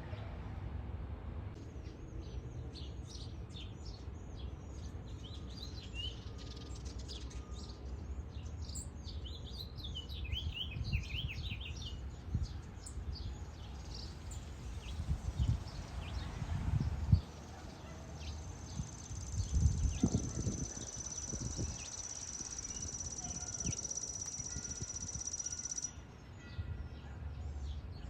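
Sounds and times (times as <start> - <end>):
small birds chirping: 8.4 - 25.9.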